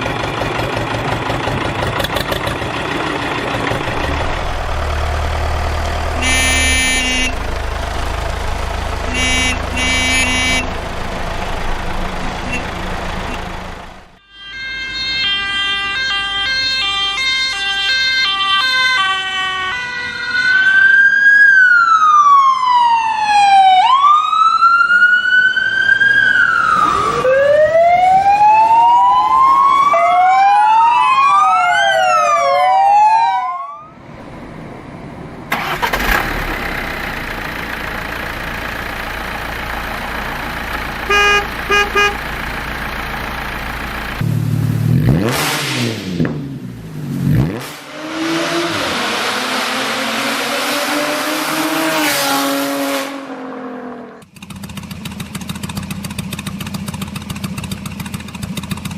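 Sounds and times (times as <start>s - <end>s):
emergency vehicle siren: 3.8s - 8.1s, 9.1s - 13.6s, 14.2s - 34.0s.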